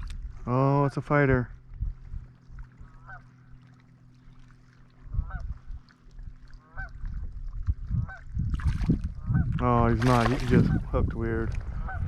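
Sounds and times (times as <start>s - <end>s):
steady low hum: 0.0s - 12.0s
geese honking: 3.0s - 3.3s, 6.6s - 7.0s.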